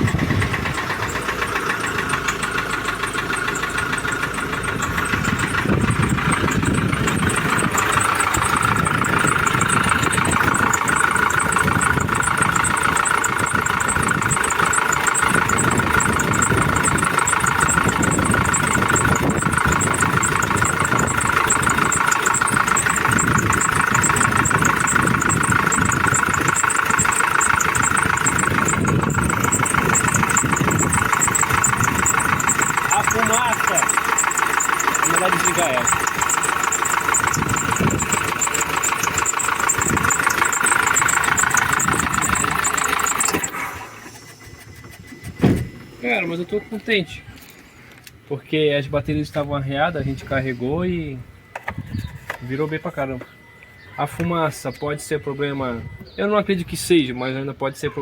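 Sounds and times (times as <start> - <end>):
rough clattering engine knock: 0.0 - 43.6
diesel engine idling: 0.0 - 58.0.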